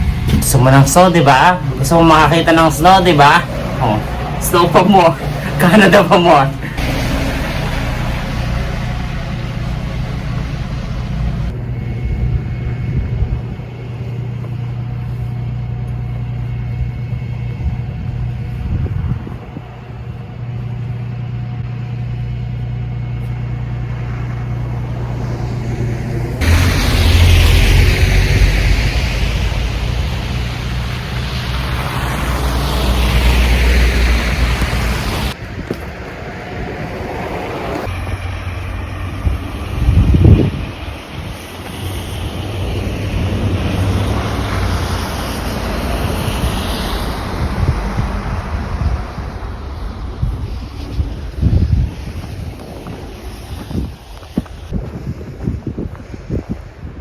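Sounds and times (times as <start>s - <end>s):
wind buffeting microphone: 0.0s - 5.8s, 6.6s - 15.1s, 16.4s - 21.0s, 24.6s - 57.0s
loud rushing noise: 0.0s - 14.0s, 24.0s - 54.8s
motor vehicle droning: 0.0s - 54.8s.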